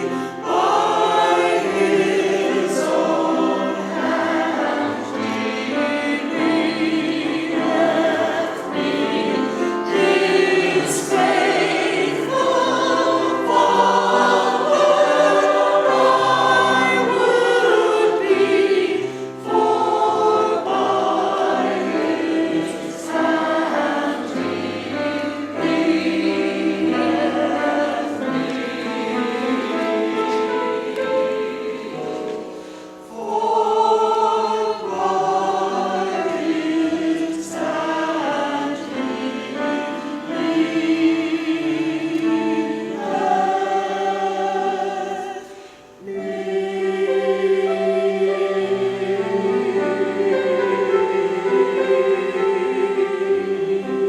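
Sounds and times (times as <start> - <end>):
church choir singing: 0.0 - 54.0.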